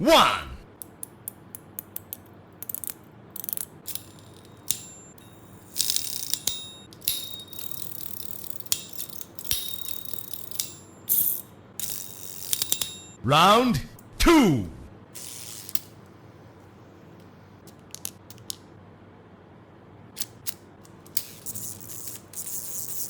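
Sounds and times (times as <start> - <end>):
fidget toy ratcheting clicks: 0.7 - 13.2.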